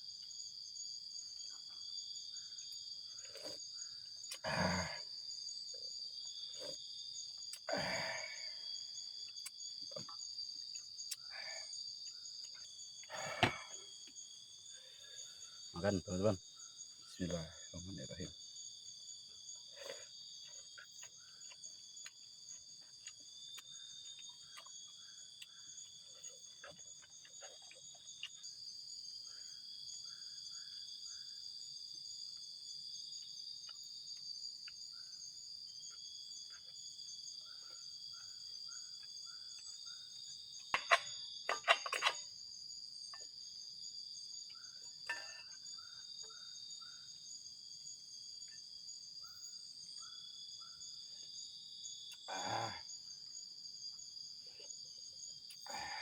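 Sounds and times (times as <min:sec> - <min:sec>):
insects chorus: 0:00.0 - 0:56.0.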